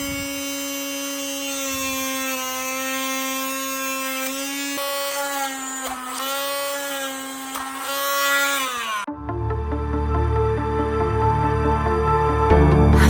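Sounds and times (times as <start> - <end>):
small electric motor whining: 0.0 - 9.1.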